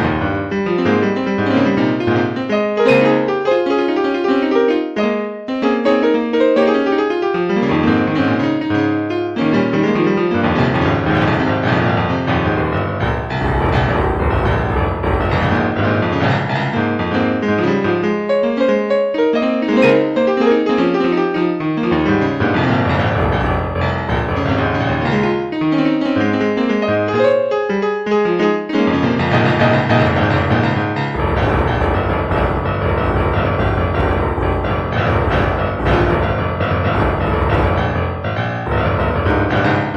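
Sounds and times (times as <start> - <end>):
piano music: 0.0 - 39.9
sustained low bass notes: 12.5 - 15.8, 31.2 - 39.9.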